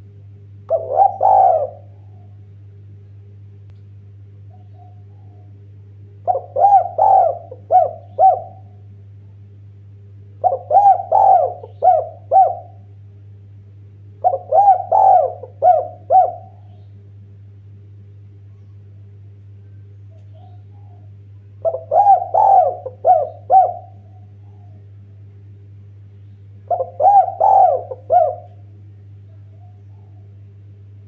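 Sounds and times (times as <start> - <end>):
steady low hum: 0.0 - 31.0
dove cooing: 0.7 - 2.5, 4.5 - 5.6, 6.2 - 8.8, 10.4 - 12.9, 14.2 - 16.9, 20.1 - 25.0, 26.6 - 30.6.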